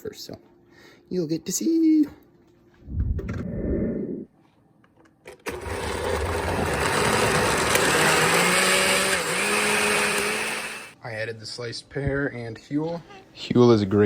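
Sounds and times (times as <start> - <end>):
blender running: 5.5 - 11.0.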